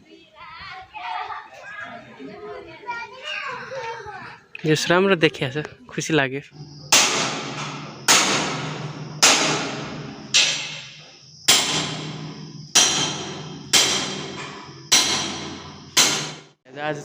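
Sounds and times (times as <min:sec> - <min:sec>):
hammer striking nails: 0:06.9 - 0:16.6.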